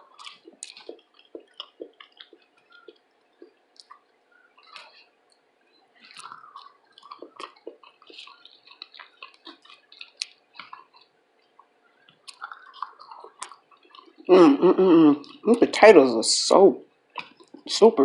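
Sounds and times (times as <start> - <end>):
chewing with wet mouth clicks: 0.0 - 14.3, 15.2 - 15.4, 17.1 - 17.7.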